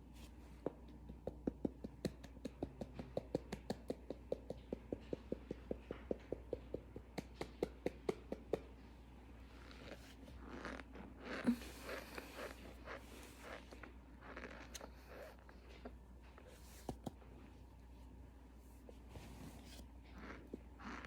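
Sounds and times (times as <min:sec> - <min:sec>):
cornstarch squeaking when chewed: 0:09.5 - 0:15.9, 0:20.1 - 0:21.0.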